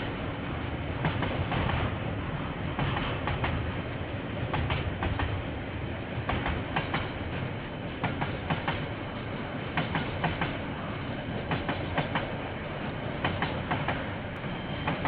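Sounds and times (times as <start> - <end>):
train rumble: 0.0 - 15.0
train wheels clicking over rail joints: 0.9 - 2.0, 2.6 - 3.8, 4.4 - 5.5, 6.2 - 10.6, 11.2 - 15.0.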